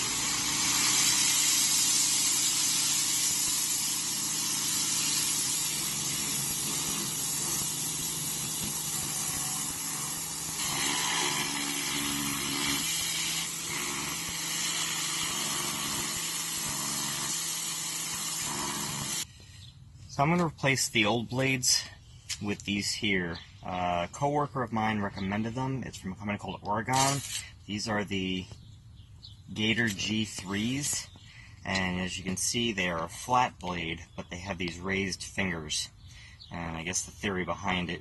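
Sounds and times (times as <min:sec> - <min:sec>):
pressure washer spray hissing: 0:00.0 - 0:19.2
machine hum: 0:00.0 - 0:19.3.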